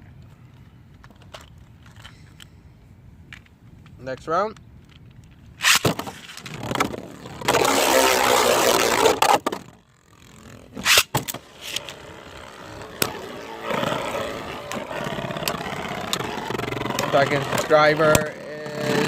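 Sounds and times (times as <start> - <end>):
spinning tops whirring and scraping: 5.6 - 19.0.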